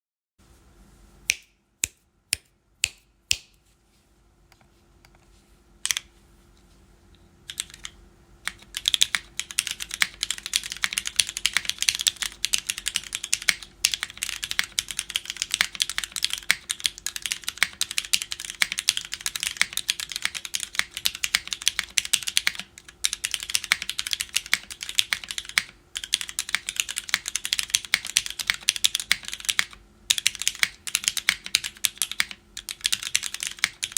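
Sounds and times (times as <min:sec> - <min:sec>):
mechanical keyboard typing: 0:07.5 - 0:33.9.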